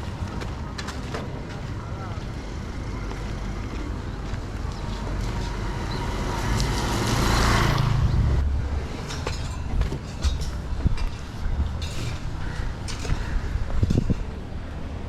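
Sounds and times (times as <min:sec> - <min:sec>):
low traffic rumble: 0:00.0 - 0:15.0
vehicle passing by: 0:02.4 - 0:09.1.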